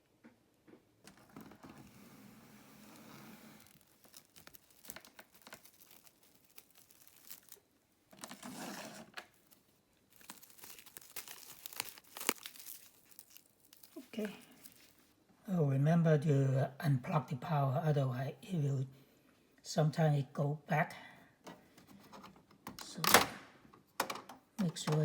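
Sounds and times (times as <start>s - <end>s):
material crinkling and rustling: 0.7s - 15.2s
small clicks and knocks: 23.7s - 25.0s.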